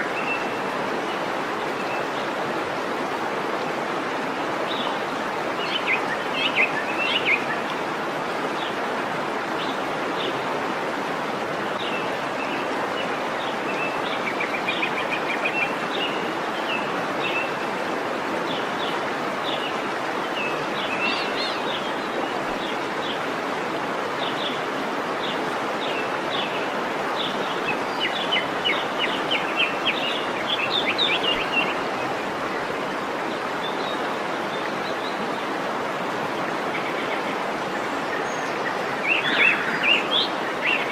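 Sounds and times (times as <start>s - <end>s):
waterfall rushing: 0.0s - 40.9s
birds chirping: 36.6s - 40.9s.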